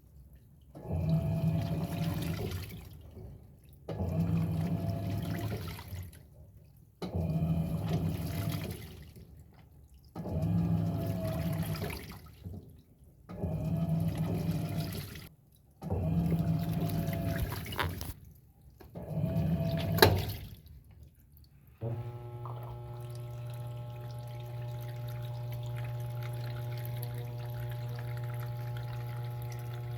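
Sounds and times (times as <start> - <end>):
water sloshing in drum: 0.0 - 29.9
washing machine motor humming: 0.8 - 2.7, 3.9 - 5.7, 7.0 - 8.9, 10.2 - 12.0, 13.3 - 18.2, 19.0 - 20.4, 21.8 - 29.9.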